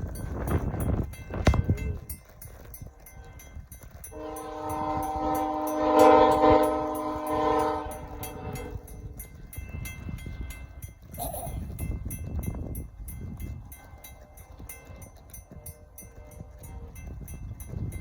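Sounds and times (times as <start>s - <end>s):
locomotive air horn blast: 4.1s - 9.2s.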